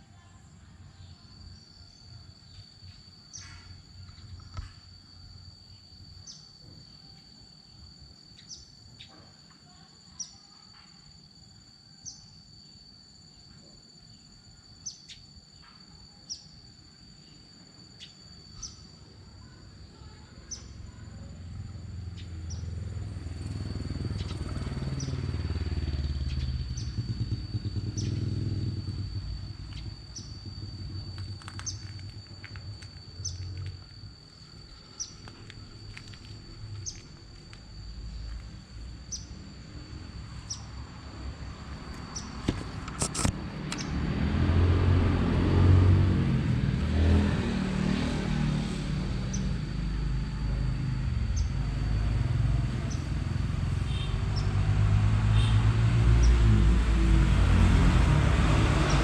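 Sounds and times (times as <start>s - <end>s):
high-pitched insect trill: 0.0s - 59.0s
motor vehicle passing: 20.5s - 59.0s.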